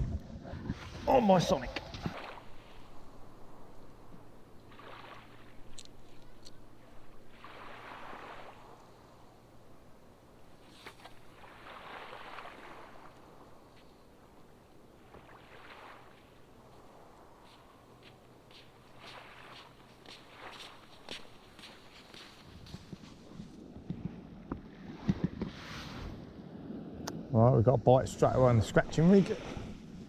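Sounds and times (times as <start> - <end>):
small waves washing onto beach: 0.6 - 27.0
faint clicks: 5.7 - 6.6.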